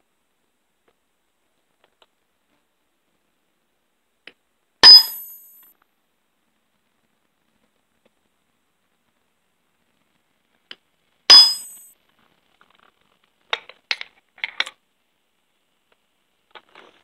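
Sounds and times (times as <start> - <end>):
hammer clanging on metal: 4.8 - 5.6, 11.3 - 11.9
light metal clinks: 4.8 - 5.7, 11.3 - 11.9.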